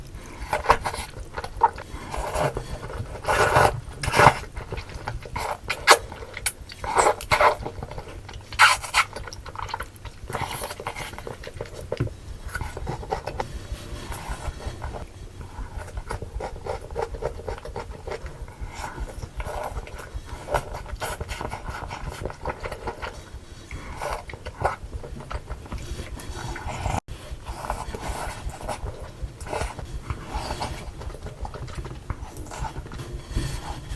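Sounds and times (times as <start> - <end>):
wet chewing and slurping: 0.0 - 33.9.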